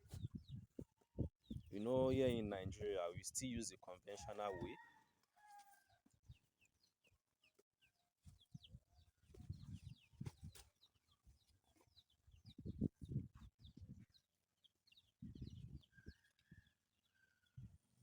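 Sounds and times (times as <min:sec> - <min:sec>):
chickens clucking: 0:04.3 - 0:04.8.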